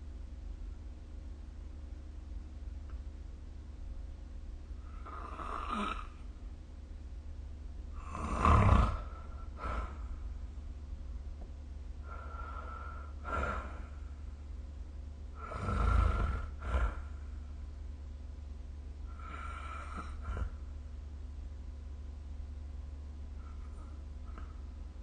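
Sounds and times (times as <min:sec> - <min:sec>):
steady low hum: 0:00.0 - 0:25.0
person snoring: 0:04.8 - 0:06.2, 0:08.0 - 0:10.2, 0:12.0 - 0:14.0, 0:15.4 - 0:17.2, 0:19.1 - 0:20.6.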